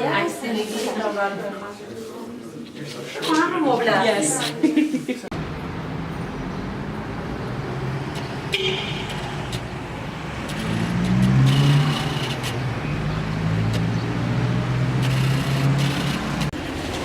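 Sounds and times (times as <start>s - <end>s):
cars passing: 5.3s - 17.0s.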